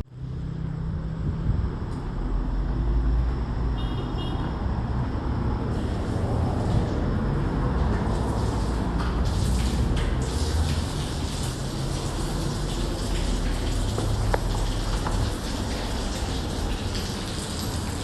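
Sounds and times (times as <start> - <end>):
highway traffic rumble: 0.0 - 18.0.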